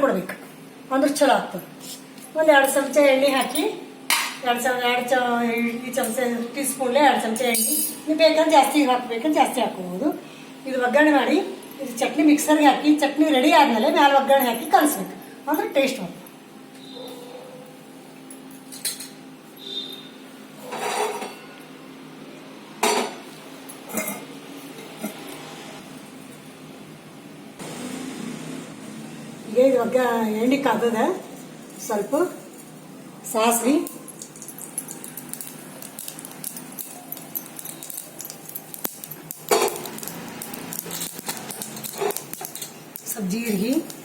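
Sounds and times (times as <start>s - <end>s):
metal scrape: 20.6s - 21.5s
faint oil sizzle: 33.6s - 44.0s
seeds popping in hot oil: 33.8s - 44.0s.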